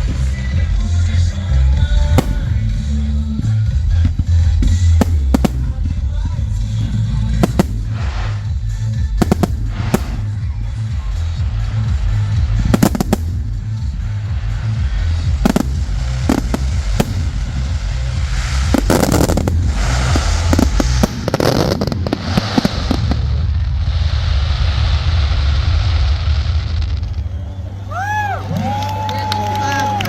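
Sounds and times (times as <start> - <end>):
music with heavy bass: 0.0 - 22.3
fireworks hissing crackle: 0.0 - 30.0
fireworks bangs: 1.8 - 27.6.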